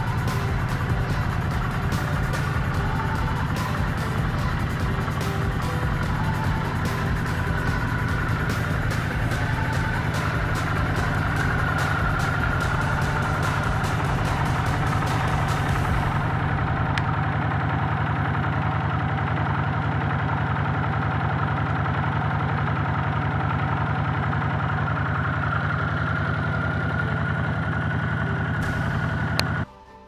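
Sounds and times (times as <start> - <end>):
motorcycle engine idling: 0.0 - 29.7.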